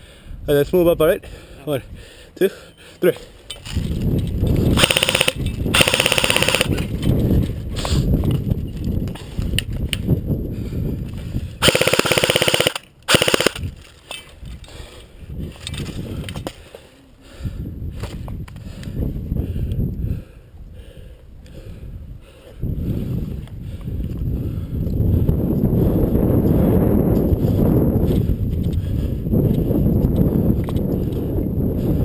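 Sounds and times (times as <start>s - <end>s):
airsoft guns firing bursts: 4.8s - 6.8s, 11.6s - 13.7s.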